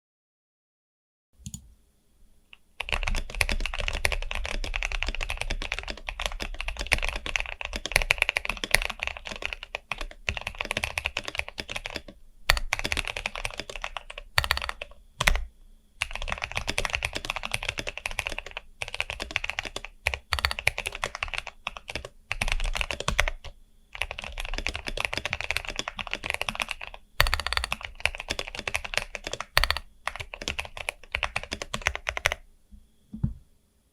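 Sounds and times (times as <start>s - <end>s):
mechanical keyboard key clacks: 10.0s - 13.8s, 14.4s - 15.4s, 19.2s - 21.2s, 24.7s - 32.4s.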